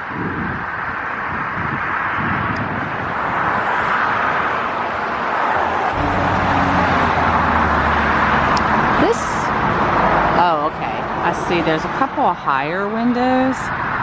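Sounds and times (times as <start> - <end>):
tyre and road noise: 0.0 - 14.0
low engine hum: 5.5 - 10.9.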